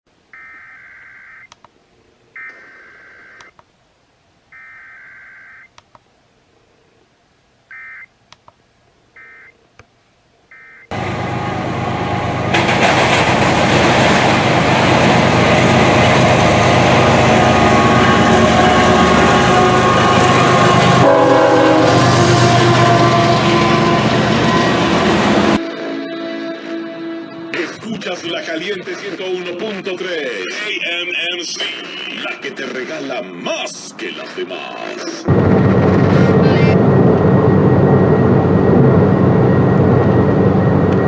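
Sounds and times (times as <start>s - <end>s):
clicks: 2.4s - 3.7s.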